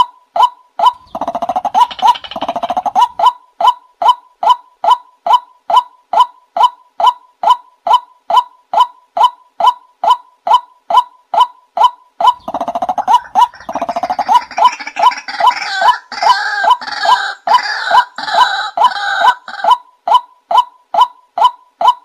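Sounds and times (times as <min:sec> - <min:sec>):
waterhen calling: 0:00.8 - 0:03.3, 0:12.2 - 0:19.8.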